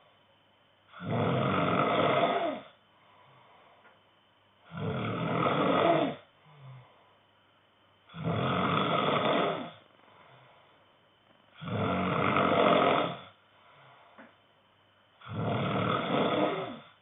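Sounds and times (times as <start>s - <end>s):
man snoring: 0.9s - 2.8s, 4.7s - 6.9s, 8.1s - 9.9s, 11.6s - 13.4s, 15.2s - 17.0s.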